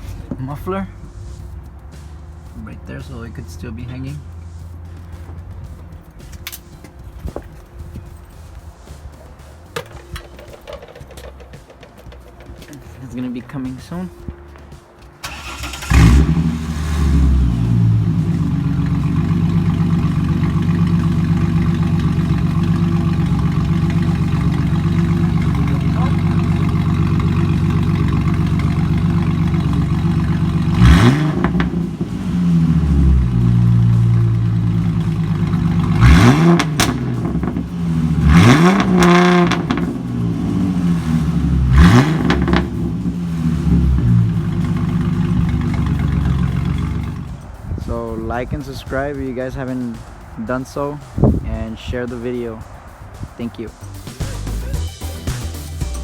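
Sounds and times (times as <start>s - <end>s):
car engine starting and idling: 0.0s - 14.3s, 15.0s - 51.0s
engine revving through open exhaust: 15.2s - 47.8s.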